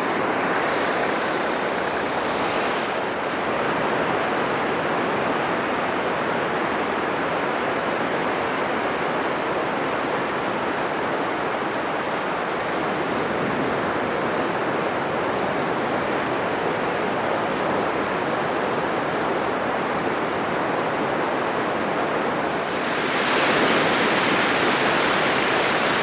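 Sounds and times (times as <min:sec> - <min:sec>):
surf breaking on beach: 0:00.0 - 0:04.0, 0:22.1 - 0:26.0.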